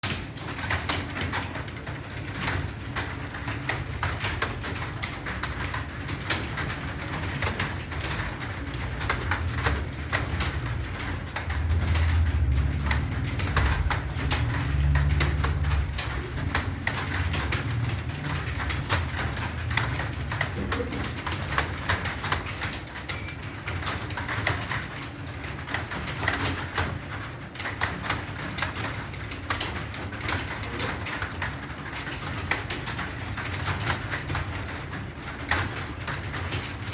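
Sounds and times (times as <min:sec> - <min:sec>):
rapid keyboard typing: 0:00.0 - 0:36.9
low rumble: 0:11.4 - 0:20.8.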